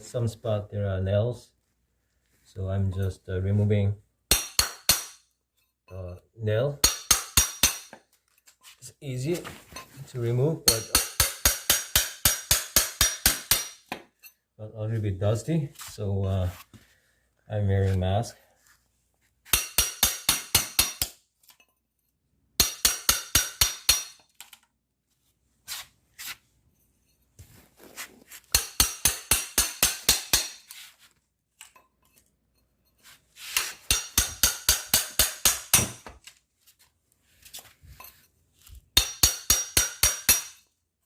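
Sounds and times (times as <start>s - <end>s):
hammer tapping metal nail puller: 19.6s - 21.2s, 22.6s - 24.7s, 28.5s - 30.7s, 33.6s - 36.1s, 39.0s - 40.6s.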